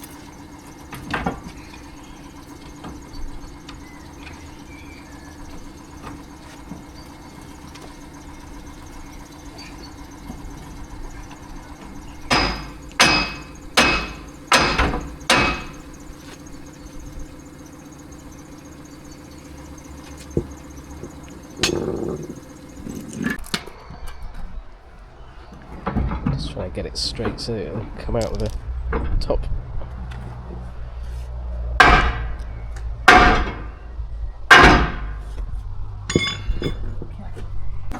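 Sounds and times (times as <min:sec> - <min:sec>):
engine hum: 0:00.0 - 0:37.9
hammer striking metal: 0:12.2 - 0:15.9, 0:31.8 - 0:32.4, 0:33.1 - 0:33.8, 0:34.5 - 0:35.2, 0:36.1 - 0:36.9.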